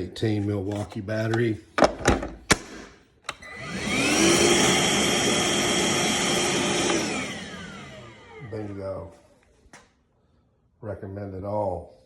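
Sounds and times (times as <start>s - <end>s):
vacuum motor whine: 3.3s - 9.0s.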